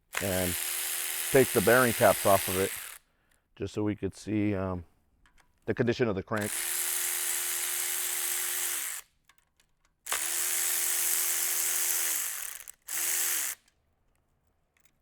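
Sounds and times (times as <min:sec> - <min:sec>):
cordless power tool whining: 0:00.0 - 0:03.1, 0:06.4 - 0:09.1, 0:10.1 - 0:13.7
small clicks: 0:09.0 - 0:10.2, 0:12.5 - 0:15.0.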